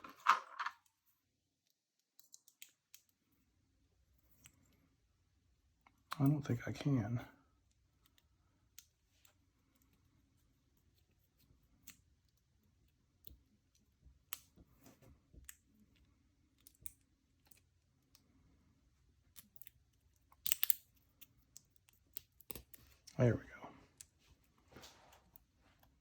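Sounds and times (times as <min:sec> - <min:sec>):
padlock metallic clicks and scrapes: 0:19.3 - 0:22.8.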